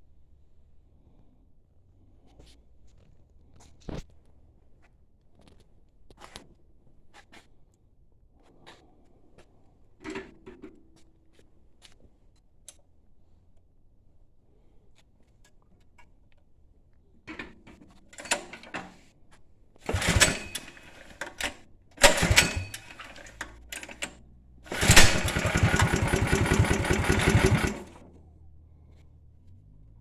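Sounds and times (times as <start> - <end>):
small engine cranking and running: 19.8 - 28.1.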